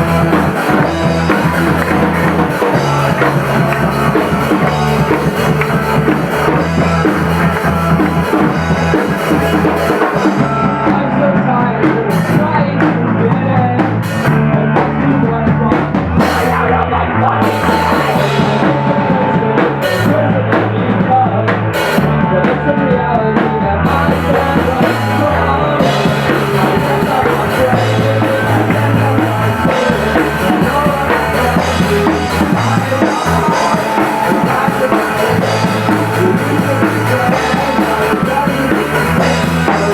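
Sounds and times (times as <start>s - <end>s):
rock band playing: 0.0s - 39.9s.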